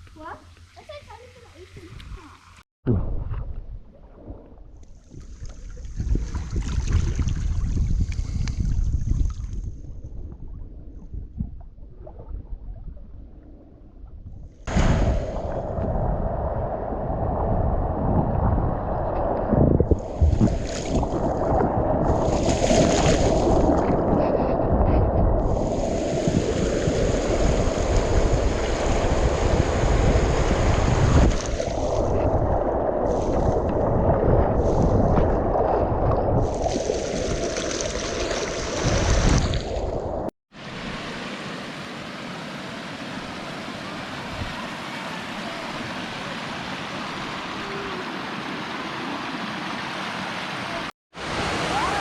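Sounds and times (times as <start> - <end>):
wind buffeting microphone: 5.1 - 11.8, 14.2 - 37.6
river water rushing: 40.6 - 52.0.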